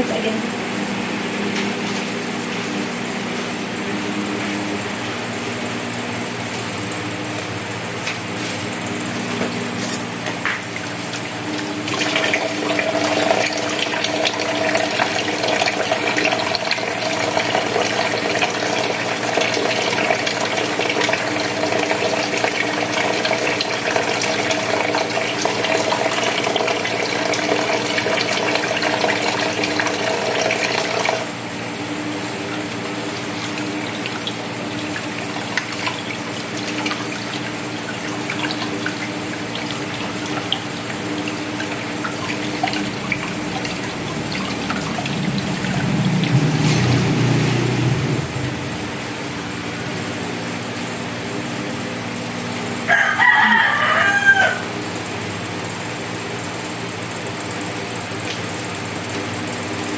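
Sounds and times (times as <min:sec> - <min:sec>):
tap water running into sink: 0:10.5 - 0:31.3, 0:33.2 - 0:48.1.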